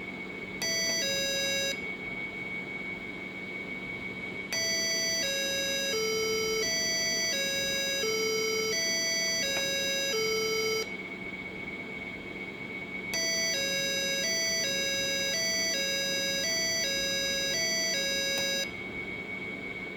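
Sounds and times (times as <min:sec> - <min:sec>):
electronic buzzer doorbell tune: 0:00.6 - 0:01.8, 0:04.5 - 0:10.9, 0:13.2 - 0:18.7.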